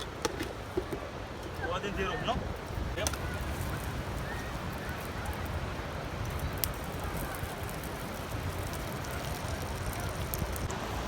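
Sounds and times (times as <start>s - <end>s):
wood fire crackling: 2.5s - 11.0s.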